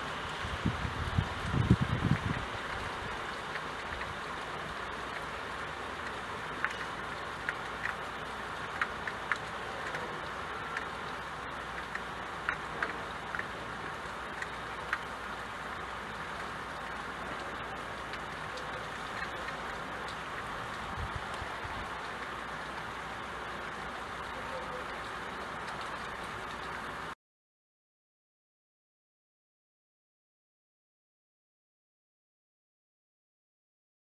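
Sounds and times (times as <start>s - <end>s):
steady rain: 0.0s - 27.2s.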